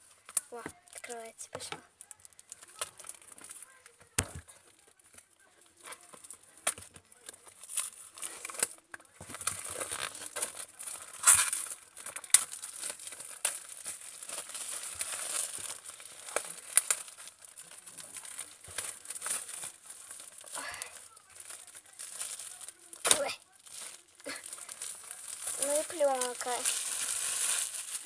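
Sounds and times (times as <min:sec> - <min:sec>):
packaging being torn and crinkled: 0:01.9 - 0:28.0.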